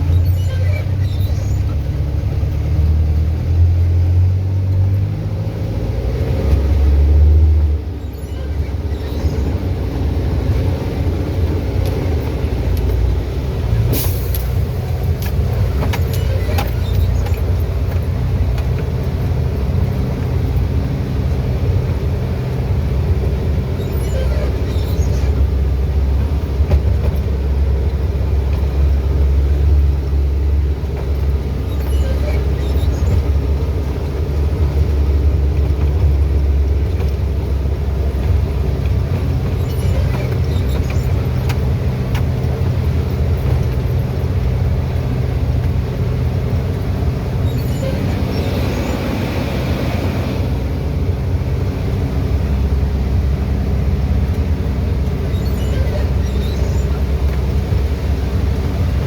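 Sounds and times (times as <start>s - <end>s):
truck engine running under load: 0.0s - 59.0s.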